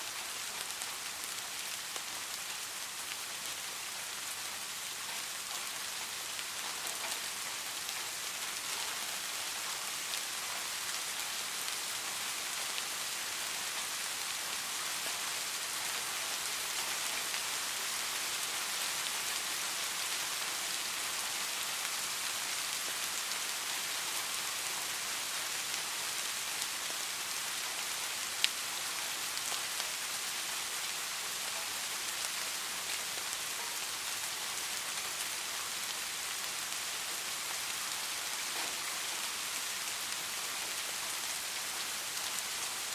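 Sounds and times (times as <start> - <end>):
rain falling on a surface: 0.0 - 42.9.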